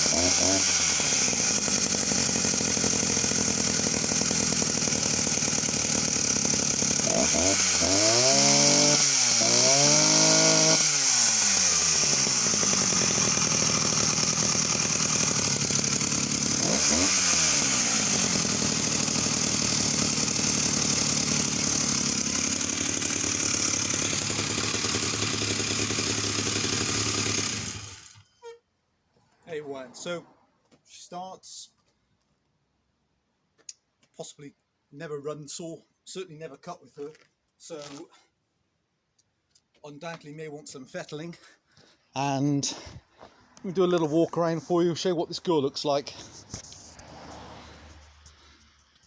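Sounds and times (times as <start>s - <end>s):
two-stroke chainsaw revving and idling: 0.0s - 28.2s.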